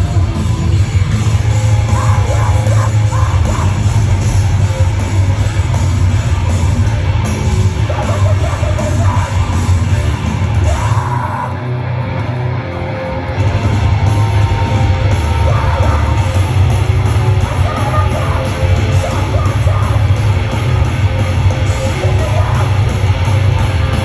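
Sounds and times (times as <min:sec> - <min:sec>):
heavy band playing live: 0:00.0 - 0:24.0.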